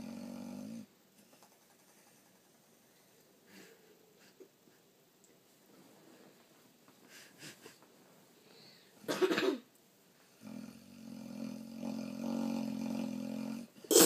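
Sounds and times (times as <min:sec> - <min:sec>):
dog snoring: 0:00.0 - 0:00.9, 0:10.4 - 0:13.8.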